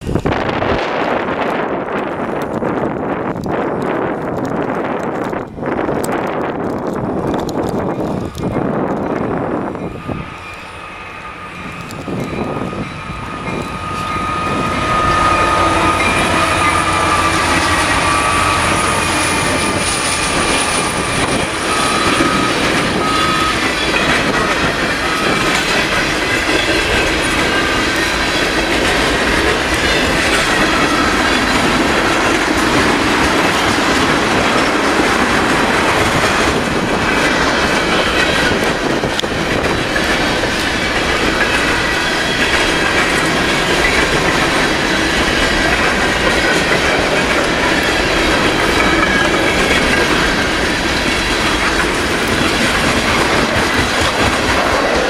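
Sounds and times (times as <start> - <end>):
diesel locomotive: 0.0 - 55.0
freight train wheels clattering: 0.0 - 55.0
thin high tone: 9.6 - 25.6.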